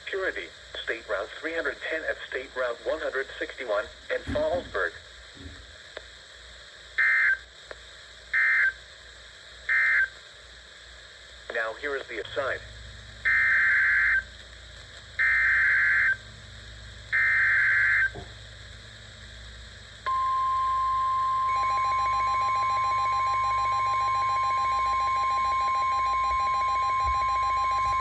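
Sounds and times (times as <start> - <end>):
rapidly pulsing tone: 4.1 - 5.7
steady alarm tone: 20.1 - 28.0.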